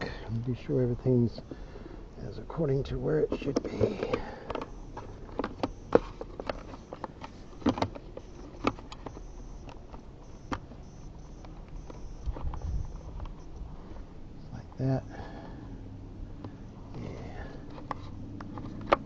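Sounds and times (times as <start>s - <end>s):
low steady background noise: 0.0s - 19.0s
equipment being handled knocks: 3.4s - 8.0s.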